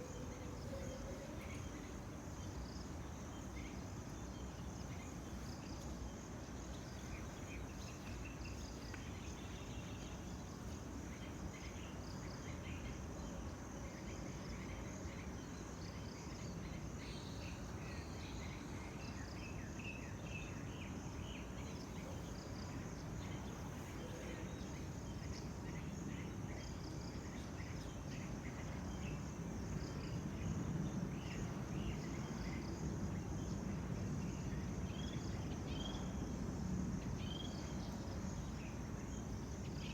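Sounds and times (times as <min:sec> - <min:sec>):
high insect drone: 0:00.0 - 0:39.9.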